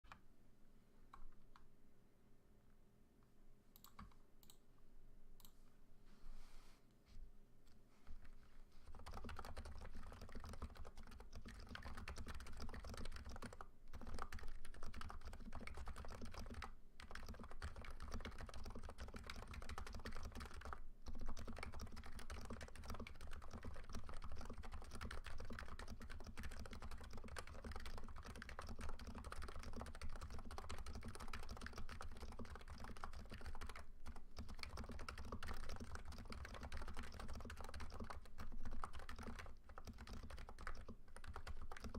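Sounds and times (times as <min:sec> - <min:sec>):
fast keyboard typing: 0:08.9 - 0:41.9.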